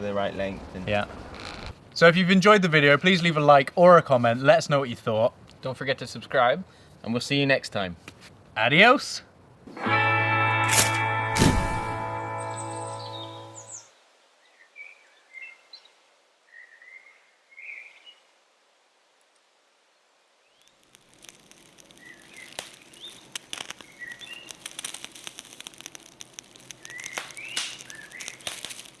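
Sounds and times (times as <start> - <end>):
rushing noise with crackles: 0.0 - 4.4, 20.5 - 29.0
small birds chirping: 12.4 - 15.9, 20.4 - 24.9, 26.6 - 28.9.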